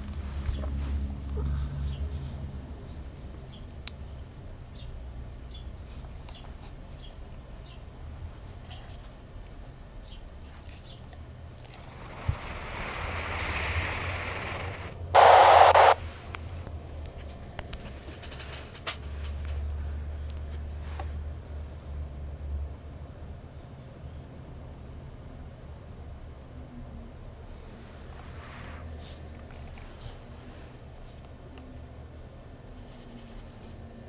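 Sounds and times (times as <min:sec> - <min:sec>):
radio static hiss: 0:11.8 - 0:16.2
low hum: 0:11.9 - 0:16.0
loud burst of radio noise: 0:12.1 - 0:16.0.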